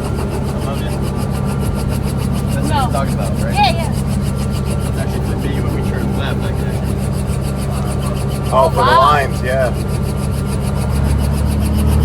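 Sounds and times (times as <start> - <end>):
helicopter engine and rotor hum: 0.0 - 12.0
person speaking: 2.5 - 4.0.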